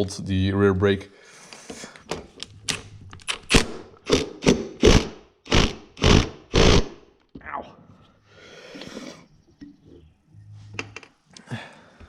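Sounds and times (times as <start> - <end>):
impact wrench rattling bursts: 3.5 - 7.0.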